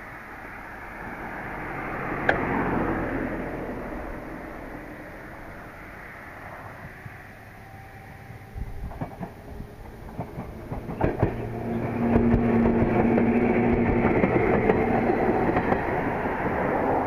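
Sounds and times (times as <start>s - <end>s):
electric train passing: 0.0s - 17.0s
steady motor hum: 0.0s - 17.0s
train wheels clicking over rail joints: 6.4s - 17.0s.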